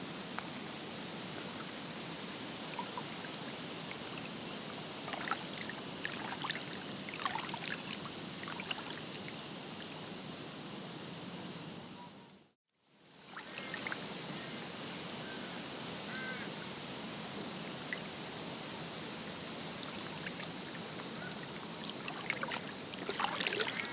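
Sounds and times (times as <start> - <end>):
water lapping and trickling: 1.4 - 10.1, 13.2 - 14.0, 19.1 - 23.9
small splashes and drips: 5.0 - 9.9, 21.6 - 23.9.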